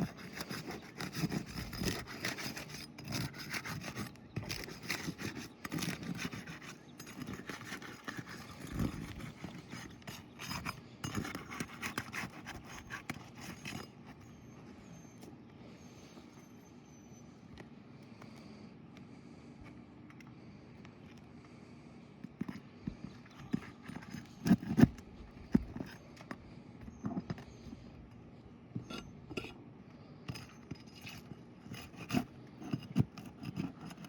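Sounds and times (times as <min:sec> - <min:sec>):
tool prying and scraping shingles: 0:00.0 - 0:15.1, 0:22.3 - 0:27.9, 0:30.2 - 0:34.0.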